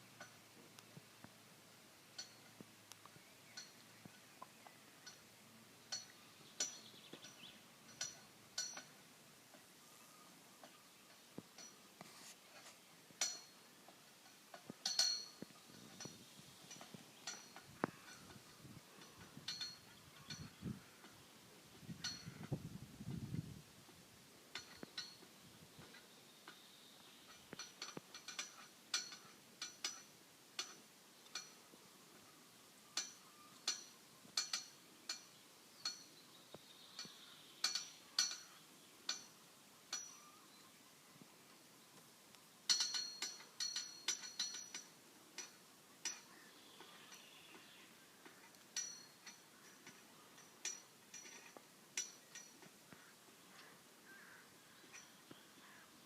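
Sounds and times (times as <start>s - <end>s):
cattle bells clinking and rattling: 2.1s - 2.5s, 5.9s - 9.0s, 11.1s - 11.8s, 13.2s - 21.2s, 22.0s - 22.5s, 24.5s - 26.1s, 27.3s - 31.6s, 33.0s - 36.2s, 37.0s - 40.4s, 42.7s - 47.4s, 48.3s - 52.7s, 54.8s - 55.8s.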